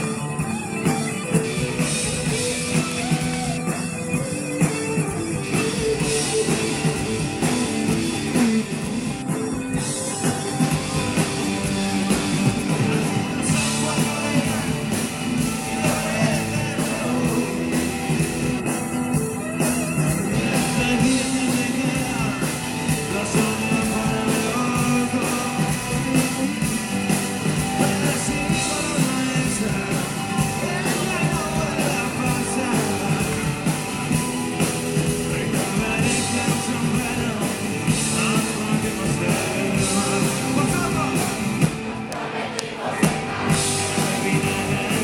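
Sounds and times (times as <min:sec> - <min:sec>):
bass guitar: 0:00.0 - 0:45.0
drums keeping a steady beat: 0:00.0 - 0:45.0
electric guitar: 0:00.0 - 0:45.0
person singing: 0:12.4 - 0:18.6, 0:20.0 - 0:26.9, 0:27.5 - 0:34.0, 0:42.2 - 0:45.0.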